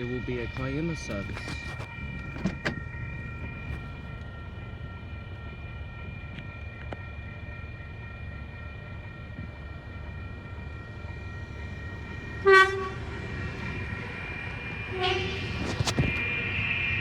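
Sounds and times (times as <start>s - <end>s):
train rumbling: 0.0s - 17.0s
train horn blast: 12.3s - 13.7s, 14.8s - 16.4s.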